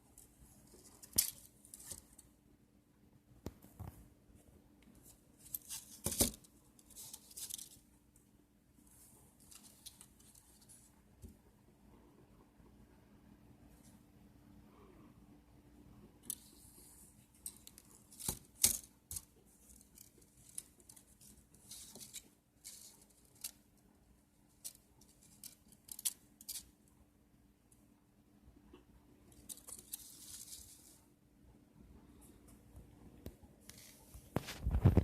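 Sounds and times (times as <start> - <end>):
small objects being handled: 0.1 - 2.4, 4.8 - 8.2, 8.8 - 11.4, 16.2 - 26.8, 29.3 - 31.2.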